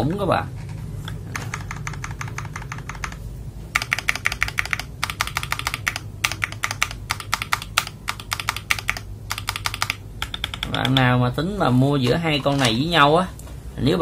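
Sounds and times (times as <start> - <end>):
mechanical keyboard typing clicks: 0.6 - 3.2, 3.8 - 11.1.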